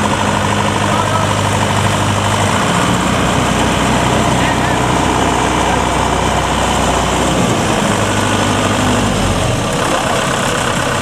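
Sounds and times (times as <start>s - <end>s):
heavy engine idling: 0.0s - 11.0s.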